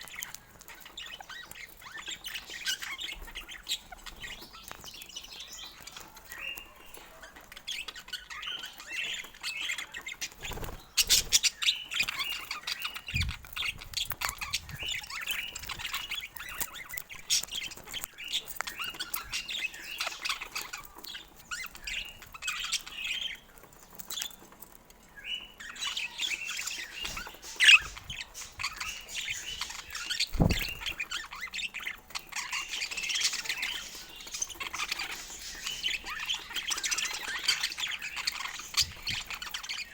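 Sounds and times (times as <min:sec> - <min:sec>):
budgerigars chattering: 0:00.0 - 0:23.5, 0:25.4 - 0:39.9
low thumps: 0:30.4 - 0:30.9.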